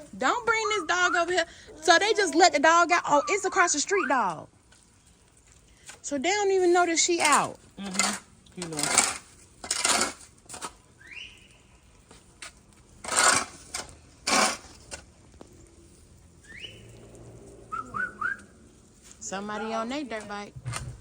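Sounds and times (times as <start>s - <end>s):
short rising whistles: 16.4s - 17.0s, 17.7s - 18.6s
quick rising chirps: 17.6s - 18.6s.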